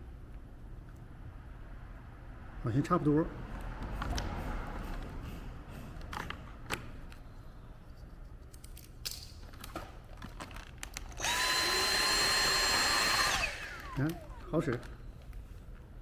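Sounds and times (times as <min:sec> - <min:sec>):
vacuum motor whining: 0:11.2 - 0:15.0.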